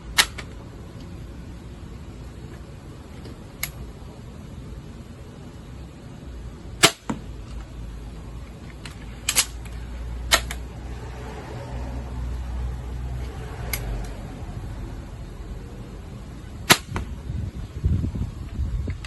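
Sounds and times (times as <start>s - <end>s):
light mechanical clicks: 13.2s - 14.2s.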